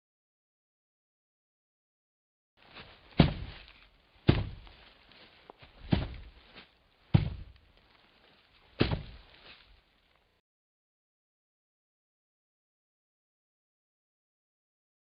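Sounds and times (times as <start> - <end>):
heavy thuds: 2.7 - 7.6, 8.7 - 9.6.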